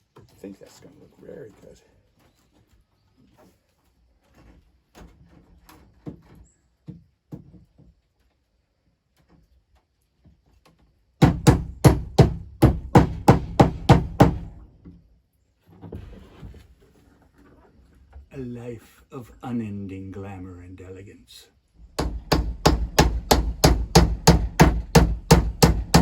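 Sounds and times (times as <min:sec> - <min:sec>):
hammer nailing wood: 0:11.2 - 0:14.6, 0:21.9 - 0:26.0.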